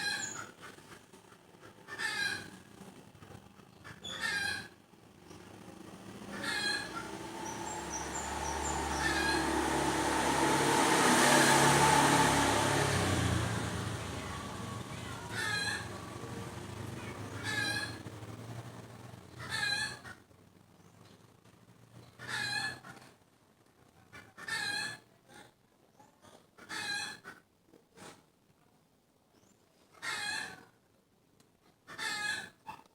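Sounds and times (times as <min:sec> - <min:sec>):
animal high wavering calls: 0:06.2 - 0:10.6.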